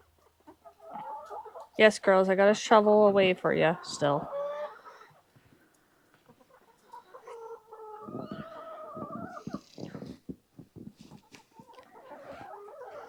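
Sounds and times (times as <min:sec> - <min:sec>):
hen calling: 0:06.6 - 0:10.2.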